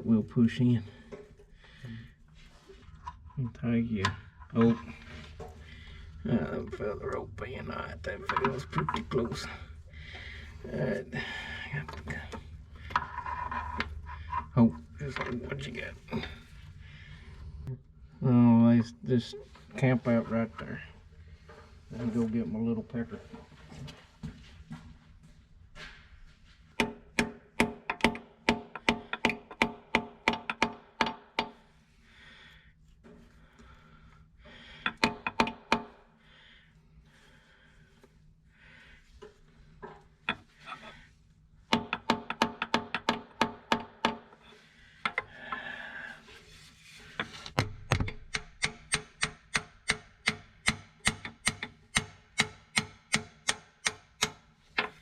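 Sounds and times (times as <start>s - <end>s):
hammer tapping on steel: 47.6s - 54.4s.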